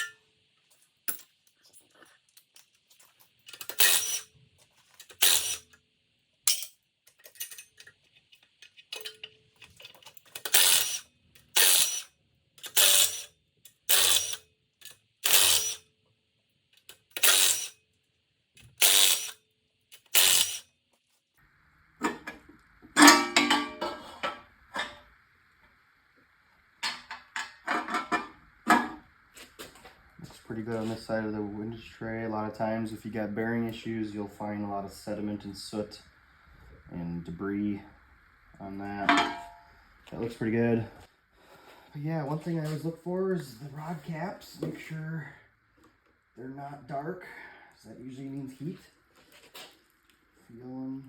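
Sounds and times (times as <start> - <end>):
loose metal parts clattering: 1.1 - 4.2, 6.5 - 12.0, 22.0 - 25.1, 26.8 - 29.0, 39.1 - 39.6
ratchet wrench clicking: 3.5 - 4.3, 5.0 - 5.7, 10.3 - 15.8, 16.9 - 17.8, 18.7 - 20.7.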